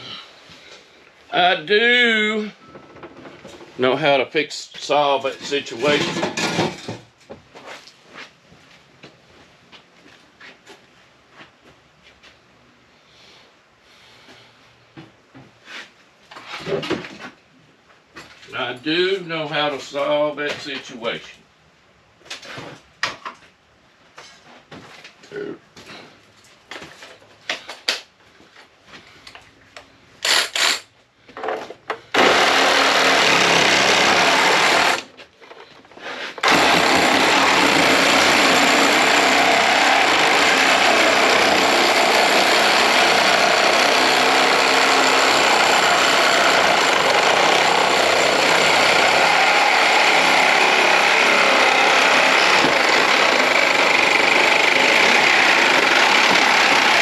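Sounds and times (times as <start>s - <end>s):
power tool running: 30.2s - 30.8s, 32.2s - 35.1s, 36.4s - 57.0s.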